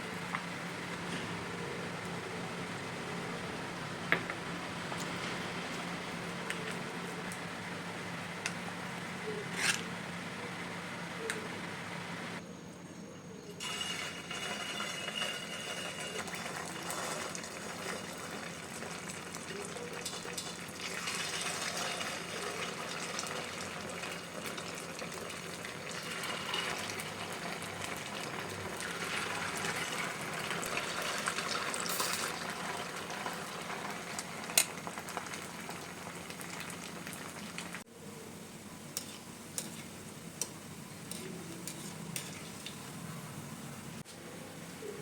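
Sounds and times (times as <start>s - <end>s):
food deep-frying in oil: 13.6s - 37.9s, 38.5s - 44.0s.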